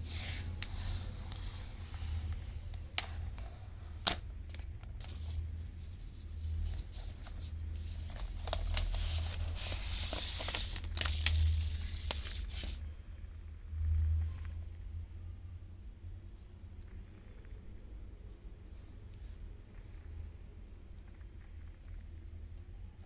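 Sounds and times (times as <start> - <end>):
packaging rustling and crinkling: 0.0 - 12.8
low steady hum: 0.0 - 23.0.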